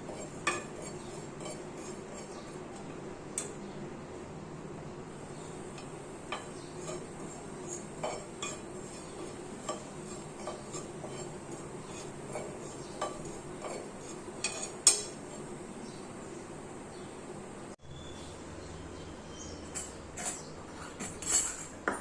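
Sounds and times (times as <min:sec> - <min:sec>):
metal spoon clinking against a pan: 0:00.1 - 0:02.3, 0:05.7 - 0:15.5.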